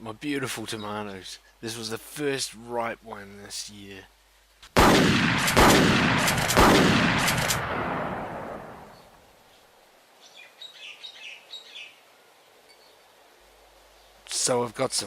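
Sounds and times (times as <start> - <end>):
birds chirping faintly: 0.0 - 3.5, 8.3 - 15.0
loud gunfire-like blasts: 4.8 - 8.9.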